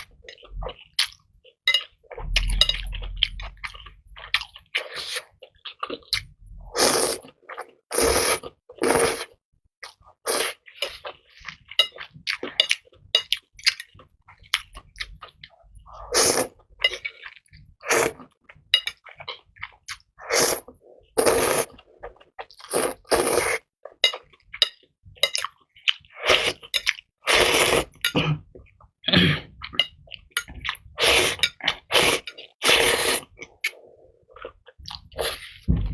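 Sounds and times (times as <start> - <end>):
close chewing and mouth sounds: 0.0 - 35.9.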